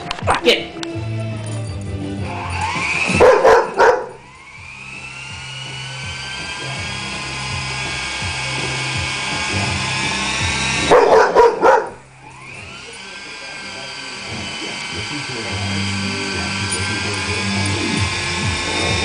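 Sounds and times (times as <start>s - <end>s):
toy helicopter motor whining: 1.4s - 19.0s
dog barking: 3.2s - 4.2s, 10.9s - 12.0s.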